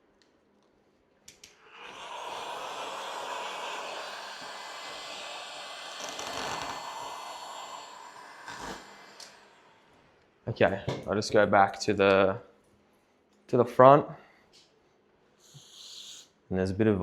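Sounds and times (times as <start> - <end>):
hot-air blower running: 1.6 - 9.7.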